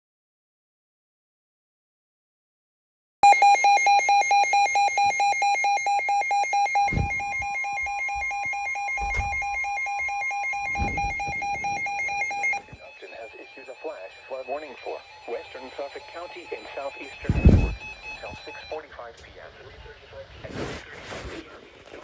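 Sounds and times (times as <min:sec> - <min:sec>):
rapid harsh alert beeps: 0:03.2 - 0:13.4
dull low thumps: 0:06.8 - 0:12.8, 0:17.2 - 0:18.3.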